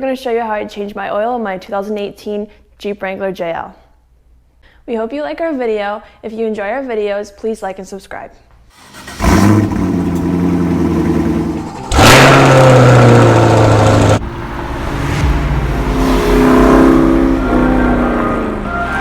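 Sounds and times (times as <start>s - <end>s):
car engine revving: 8.8s - 19.0s.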